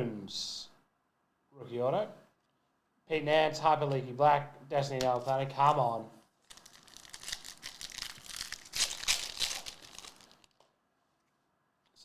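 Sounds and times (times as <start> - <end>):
foil wrapper tearing and crinkling: 6.4 - 10.6.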